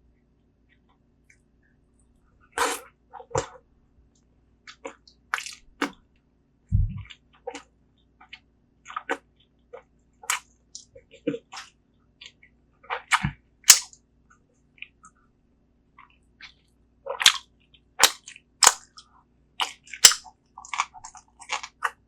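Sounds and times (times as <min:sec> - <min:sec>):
low thud: 0:06.8 - 0:07.1.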